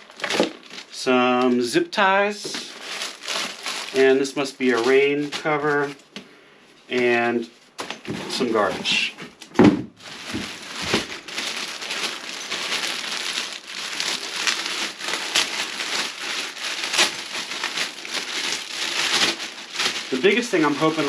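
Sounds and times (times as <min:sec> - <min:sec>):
plastic packaging crinkling: 0:00.0 - 0:01.7, 0:02.4 - 0:06.1, 0:10.0 - 0:21.0.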